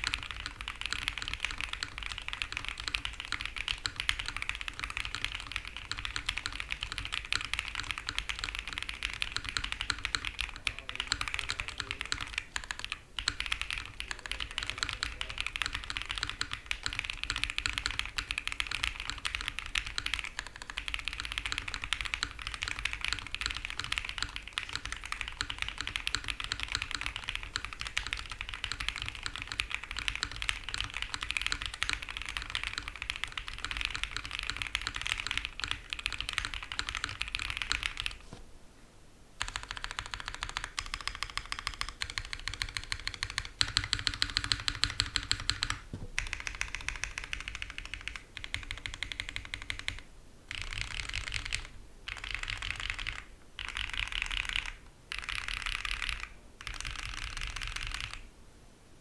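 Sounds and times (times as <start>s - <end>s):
mechanical keyboard typing: 0.0s - 38.4s, 39.4s - 58.3s.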